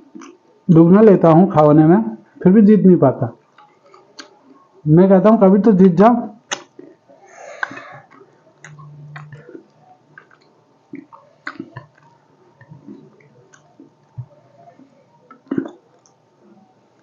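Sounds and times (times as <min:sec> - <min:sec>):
chewing and wet mouth sounds: 0:00.1 - 0:00.4, 0:03.5 - 0:04.7, 0:07.6 - 0:16.3
lip smacks: 0:03.6 - 0:04.4, 0:06.4 - 0:07.0, 0:07.6 - 0:14.4, 0:15.3 - 0:16.2.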